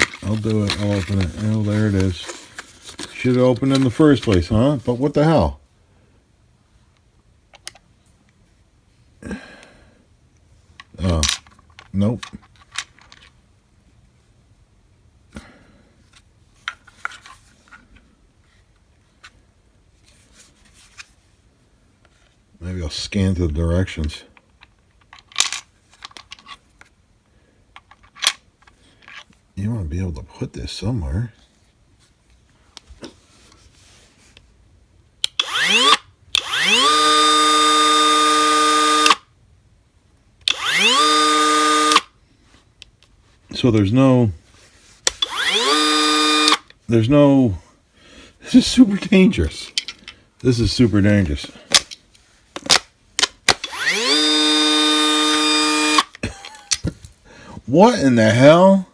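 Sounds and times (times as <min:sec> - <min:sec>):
packaging rustle: 0:00.0 - 0:04.6
tool handling clicks and knocks: 0:00.0 - 0:04.6, 0:10.8 - 0:13.4, 0:24.4 - 0:27.0, 0:49.6 - 0:50.2, 0:51.4 - 0:54.4
cordless tool motor whine: 0:35.4 - 0:39.2, 0:40.5 - 0:42.1, 0:45.2 - 0:46.7, 0:53.6 - 0:56.1.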